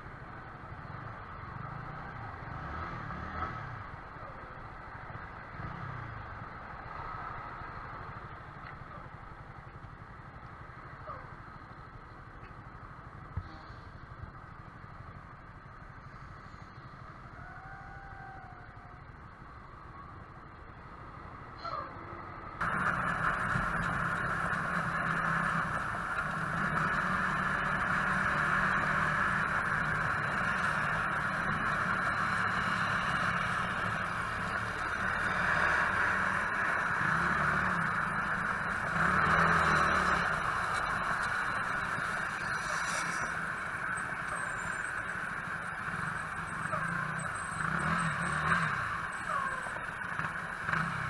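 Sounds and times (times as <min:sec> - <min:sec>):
wind and road noise: 0:00.0 - 0:51.0
motorcycle engine running: 0:22.6 - 0:51.0.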